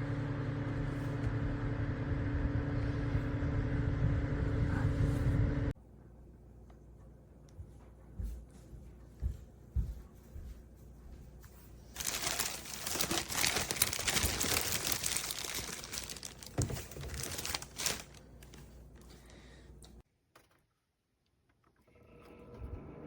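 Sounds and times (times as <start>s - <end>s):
low steady hum: 0.0s - 20.0s
crinkling and crumpling: 11.8s - 20.5s.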